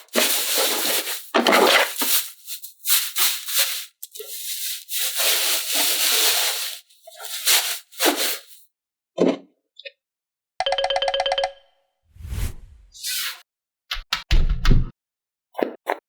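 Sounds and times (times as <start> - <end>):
rustling and rattling handling noise: 0.0 - 8.6.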